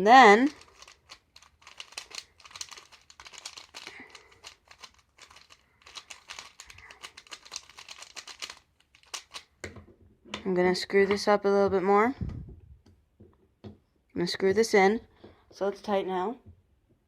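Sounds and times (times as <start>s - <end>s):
plastic puzzle cube pieces clicking: 0.4s - 9.6s.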